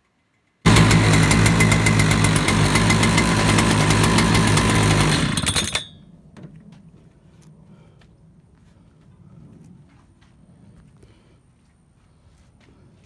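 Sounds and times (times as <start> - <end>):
chainsaw engine running: 0.7 - 5.9.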